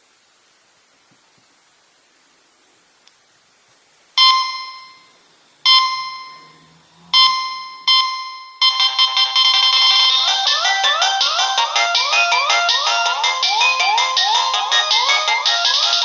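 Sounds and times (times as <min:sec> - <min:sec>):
fast ringtone melody: 0:04.2 - 0:16.0
phone ringtone bell-like notes: 0:04.2 - 0:16.0.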